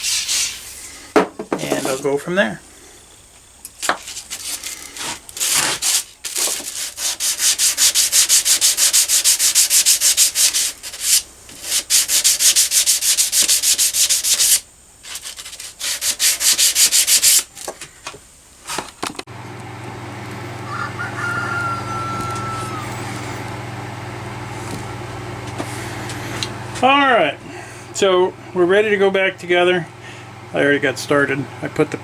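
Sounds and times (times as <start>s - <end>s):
hand wet sanding metal: 0.0s - 1.0s, 4.0s - 17.5s.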